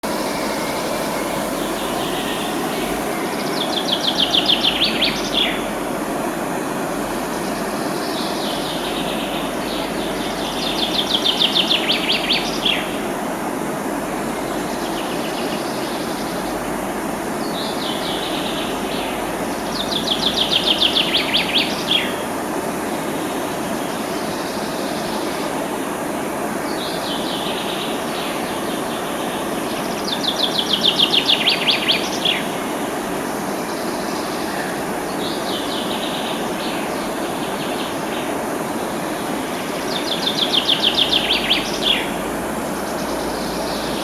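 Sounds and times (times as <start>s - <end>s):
songbird singing: 0.0s - 3.2s
river rushing: 0.0s - 3.8s.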